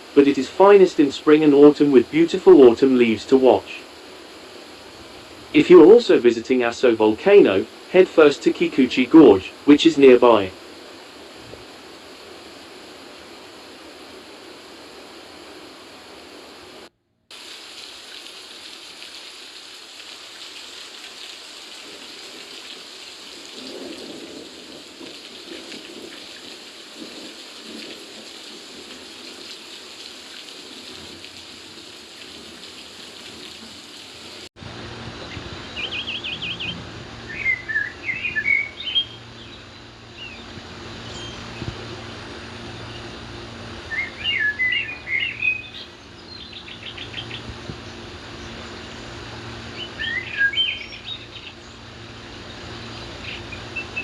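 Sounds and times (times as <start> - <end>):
river and waterfall rushing: 0.0 - 24.1, 29.2 - 54.0
small birds chirping: 35.2 - 54.0.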